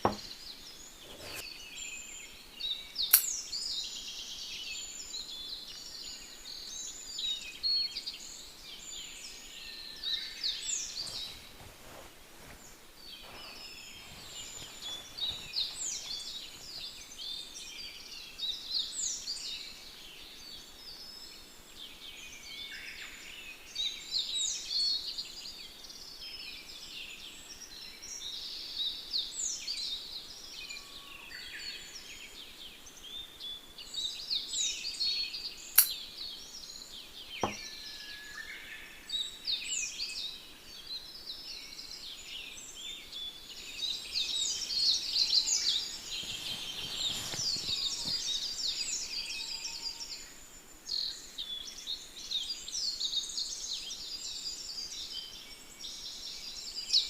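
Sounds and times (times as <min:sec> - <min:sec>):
soft rustle: 0:00.0 - 0:01.9, 0:08.1 - 0:17.4, 0:43.6 - 0:49.4
small birds chirping: 0:00.0 - 0:57.0
sharp click: 0:03.1 - 0:03.4, 0:35.8 - 0:36.0.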